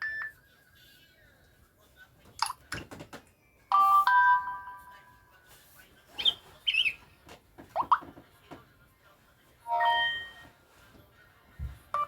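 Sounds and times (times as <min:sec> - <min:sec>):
electronic chime: 0:09.7 - 0:10.4.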